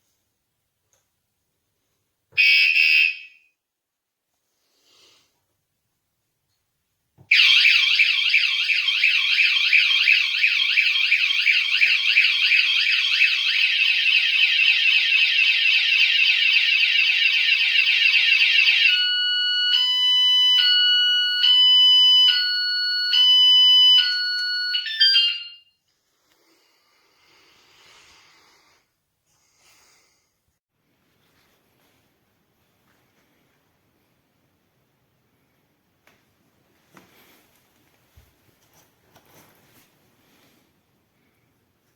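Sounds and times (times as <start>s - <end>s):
bike alarm siren: 2.4s - 3.5s, 7.3s - 25.8s.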